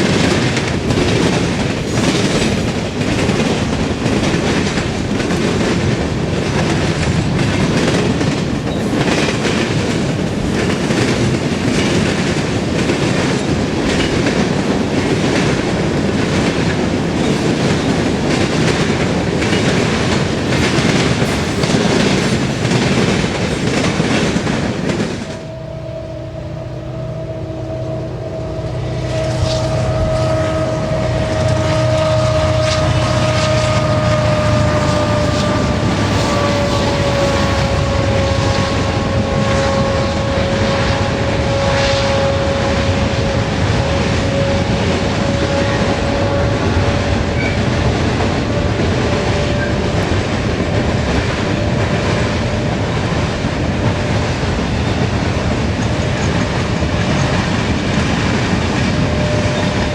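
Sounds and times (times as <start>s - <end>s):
wheels clacking over rail joints: 0.0s - 41.3s, 42.5s - 59.9s
freight train rumble: 0.0s - 59.9s
steady drone with whine: 25.3s - 44.6s.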